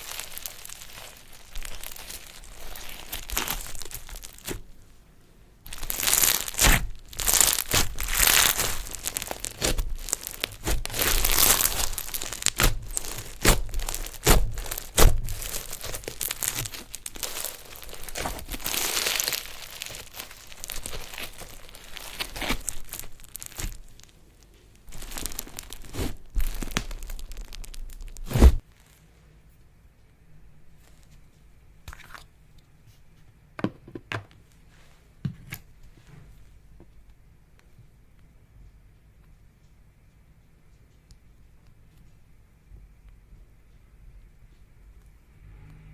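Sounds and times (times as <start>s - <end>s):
slime crackling and crinkling: 0.0s - 5.0s, 5.6s - 29.2s.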